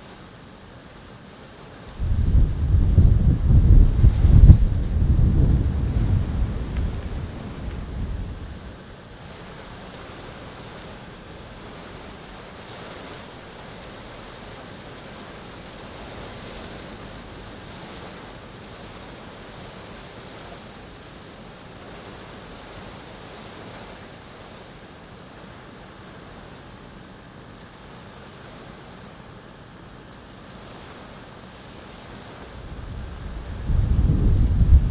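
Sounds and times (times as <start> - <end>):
storm wind rushing: 1.9 - 8.8, 32.4 - 34.9
wind buffeting microphone: 2.0 - 8.8, 32.4 - 34.9.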